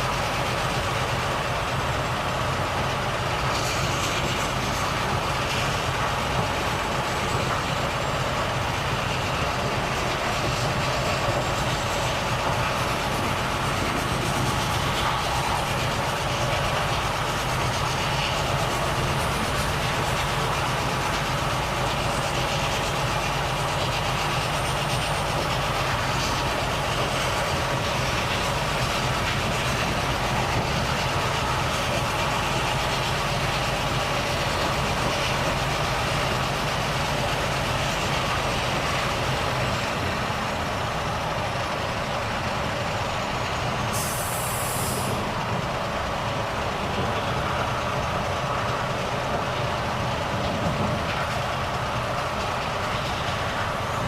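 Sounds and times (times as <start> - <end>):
truck diesel engine running: 0.0 - 54.0
road noise: 37.2 - 54.0
air hiss: 43.9 - 45.3.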